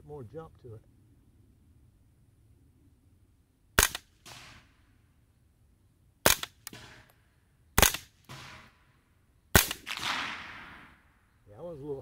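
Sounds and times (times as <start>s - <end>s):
rifle shots: 3.8s - 4.7s, 6.2s - 7.1s, 7.8s - 8.8s, 9.5s - 11.0s
noisy tail after shot: 3.8s - 4.8s, 7.8s - 8.9s, 9.5s - 11.2s.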